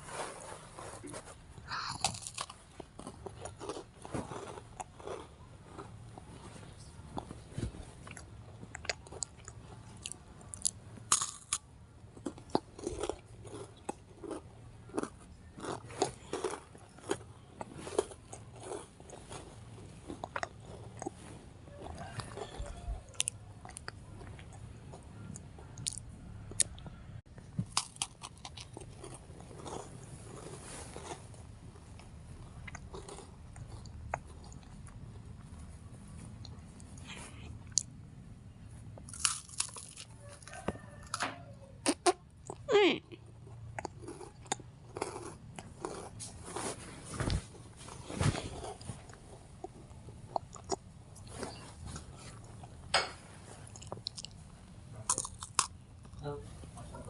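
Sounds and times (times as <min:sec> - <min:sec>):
crunchy chewing: 0:00.1 - 0:57.0.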